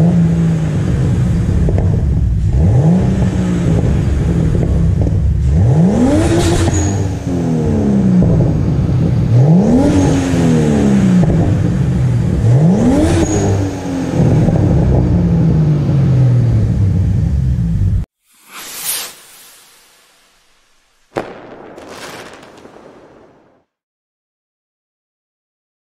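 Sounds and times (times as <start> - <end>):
car engine revving: 2.4 - 4.8, 5.4 - 15.6
short noisy burst: 18.3 - 23.7.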